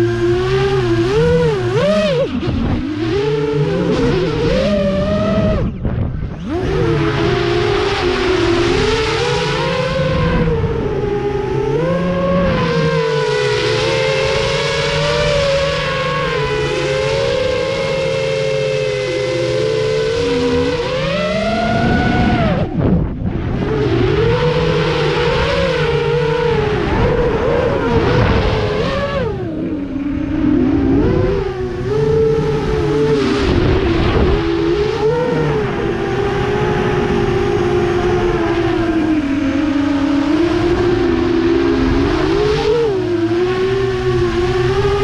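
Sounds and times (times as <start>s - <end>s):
drone motors whining: 0.0s - 45.0s.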